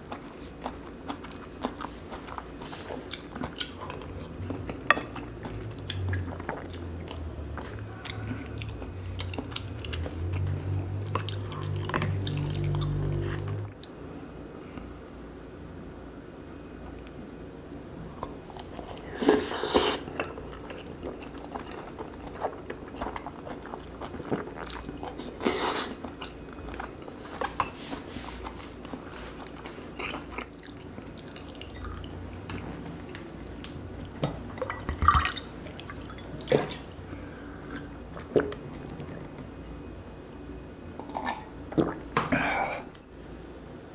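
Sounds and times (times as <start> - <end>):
wet chewing and mouth sounds: 0.0 - 14.0, 18.2 - 39.2.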